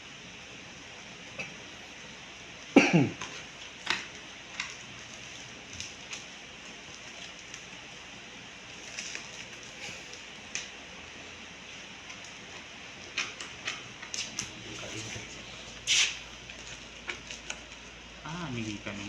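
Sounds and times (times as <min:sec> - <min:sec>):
packaging clicks and rustles: 0:03.2 - 0:07.9, 0:08.7 - 0:10.7
steady background hiss: 0:14.1 - 0:19.0.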